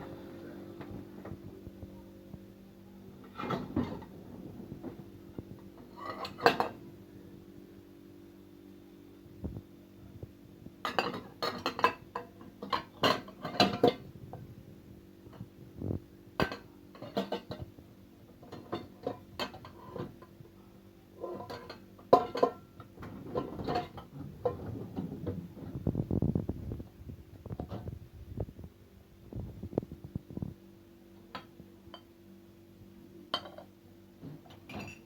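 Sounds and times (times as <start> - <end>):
faint steady hum: 0.0 - 35.0
dishes and cutlery clinking: 5.9 - 6.8, 10.8 - 14.0, 16.4 - 17.7, 21.3 - 24.7, 33.3 - 33.7, 34.4 - 35.0.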